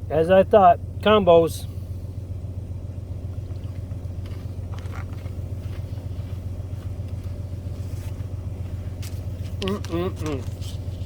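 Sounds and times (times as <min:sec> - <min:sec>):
steady low hum: 0:00.0 - 0:11.0
faint handling noises: 0:03.5 - 0:11.0.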